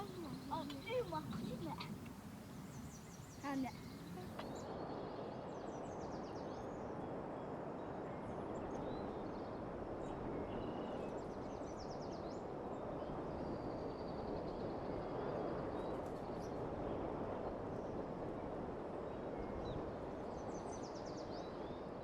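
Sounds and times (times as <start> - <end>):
faint bird chirps and trills: 0.0 - 22.0
outdoor background noise: 0.0 - 22.0.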